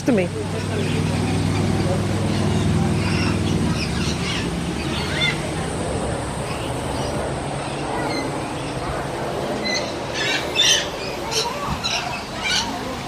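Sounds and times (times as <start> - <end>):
background murmur: 0.0 - 13.0
parrots squawking: 0.6 - 5.6, 9.6 - 12.9.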